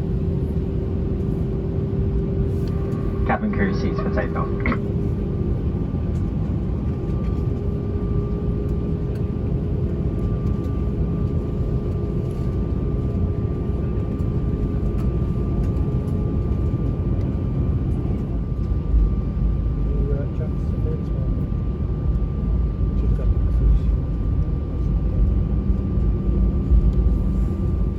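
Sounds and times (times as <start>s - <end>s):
jet engine rumble in cabin: 0.0s - 27.9s
jet engine whining tones: 2.8s - 5.0s.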